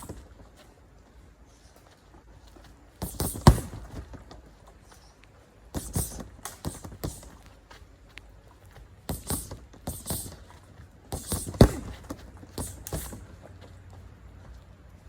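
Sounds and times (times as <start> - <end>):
punches thudding on heavy bag: 3.0 - 4.3, 5.7 - 7.3, 9.0 - 10.5, 11.1 - 13.3.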